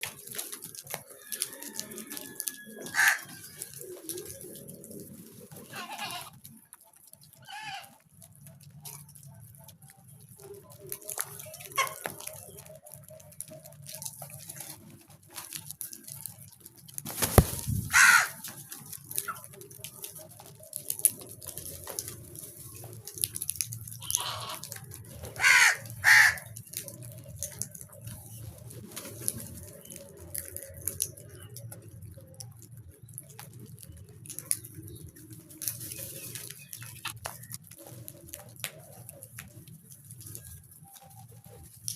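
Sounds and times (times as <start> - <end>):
small ticks: 0.0 - 41.9
crows cawing: 2.8 - 3.4, 7.4 - 7.9, 17.9 - 18.4, 24.0 - 24.7, 25.4 - 26.6.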